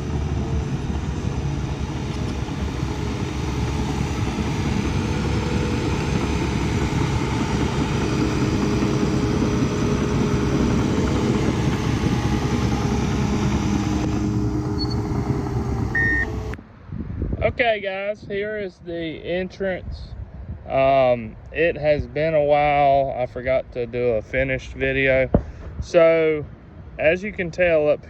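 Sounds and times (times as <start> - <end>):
heavy diesel engine running: 0.0 - 16.6.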